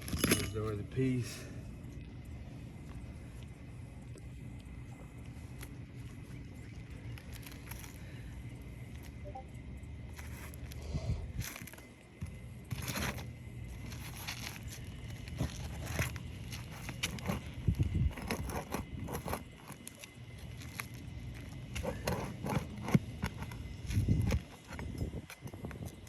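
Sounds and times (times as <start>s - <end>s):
shingles scraping and crackling: 11.5s - 26.0s.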